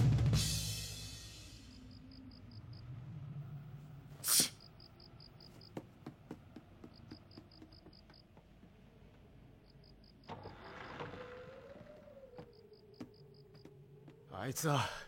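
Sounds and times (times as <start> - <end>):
crickets chirping: 0.8 - 15.0
sharp hissing burst: 4.2 - 4.6.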